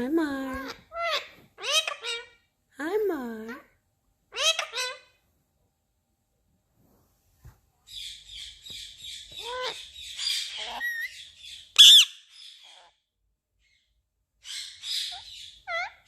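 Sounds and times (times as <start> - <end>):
parrot chattering and whistling: 0.6 - 2.4, 4.3 - 5.1, 8.0 - 13.0, 14.4 - 16.0
parrot squawk: 0.6 - 2.4, 4.3 - 5.2, 9.2 - 13.0, 14.4 - 16.0.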